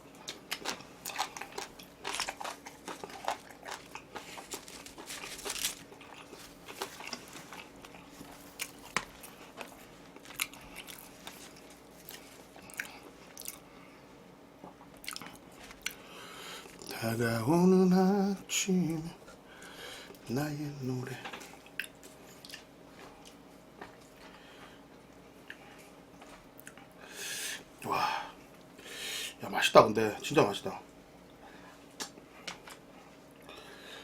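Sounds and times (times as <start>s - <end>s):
chewing and biting food: 0.0s - 13.7s, 14.6s - 16.0s, 21.3s - 24.7s
small crunches: 0.1s - 13.6s.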